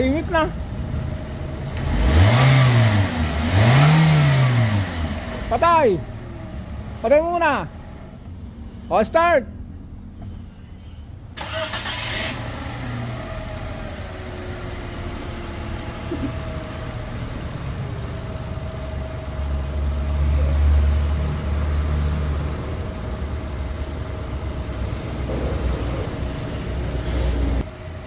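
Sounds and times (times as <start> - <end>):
car engine idling: 0.0 - 8.7, 11.4 - 28.0.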